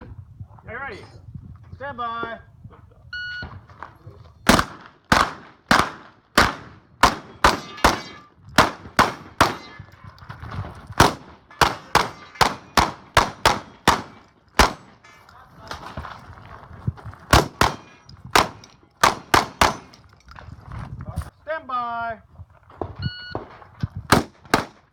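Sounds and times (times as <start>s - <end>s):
rapid shotgun fire: 4.5s - 9.6s, 11.0s - 14.9s, 17.3s - 19.9s
steel targets clanging: 11.4s - 12.8s, 13.7s - 15.4s, 19.6s - 20.2s.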